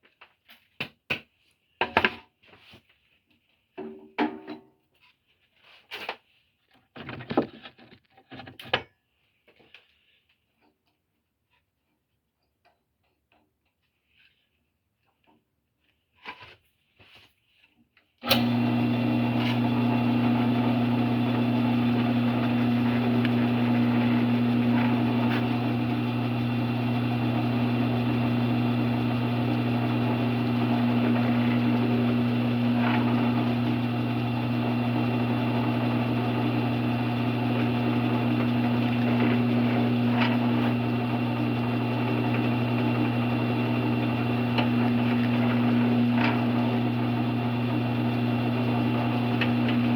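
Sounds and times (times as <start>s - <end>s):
drill press motor humming: 18.3s - 49.9s.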